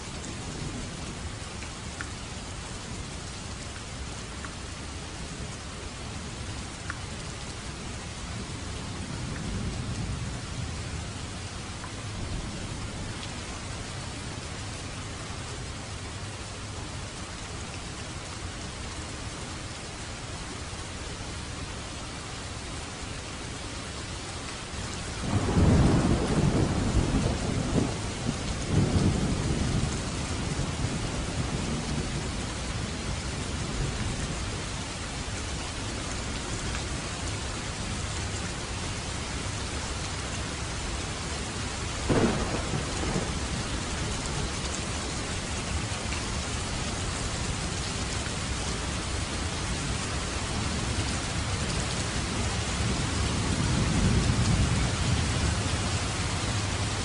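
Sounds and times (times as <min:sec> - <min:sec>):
heavy rain: 0:00.0 - 0:57.0
sharp crack of thunder: 0:25.3 - 0:30.0, 0:42.1 - 0:43.7
rolling thunder: 0:25.3 - 0:32.1, 0:42.1 - 0:44.6, 0:52.5 - 0:56.8.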